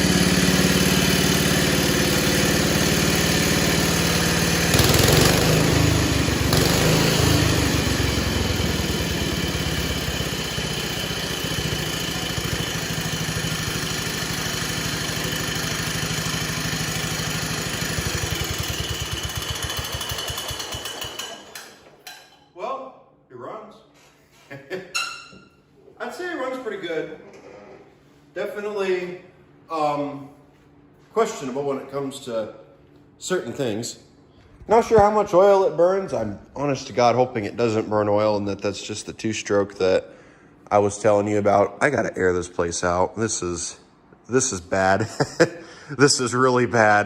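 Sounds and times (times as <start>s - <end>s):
garden tractor engine running: 0.0s - 21.7s.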